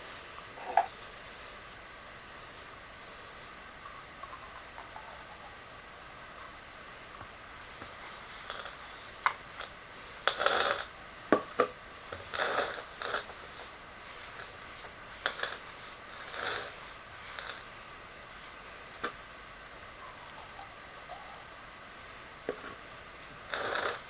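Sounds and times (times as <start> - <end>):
scrapes and rubs of handling: 12.1 - 17.6.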